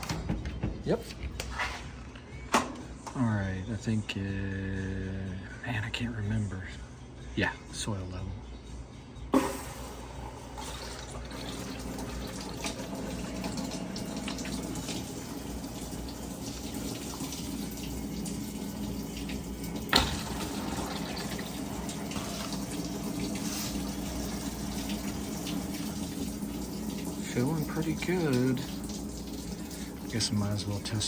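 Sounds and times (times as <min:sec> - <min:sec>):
water pouring into washer drum: 0:09.4 - 0:31.0.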